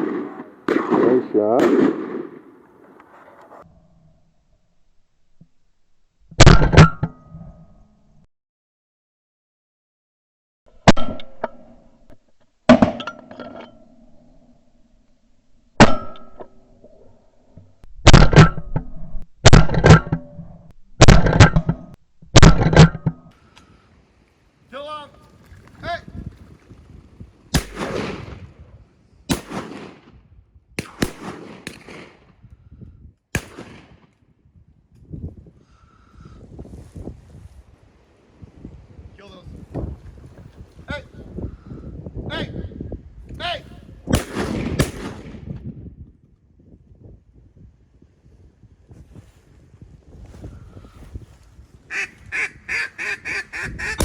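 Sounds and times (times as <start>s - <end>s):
shotgun shots echoing: 0.0s - 3.0s, 27.5s - 28.5s, 29.3s - 30.2s, 30.8s - 32.4s, 33.3s - 34.1s, 44.1s - 45.6s.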